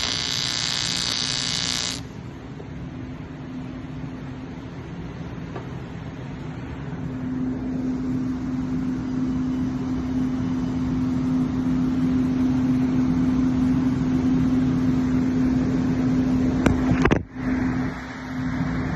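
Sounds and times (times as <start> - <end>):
welding arc buzzing hum: 0.0 - 2.3.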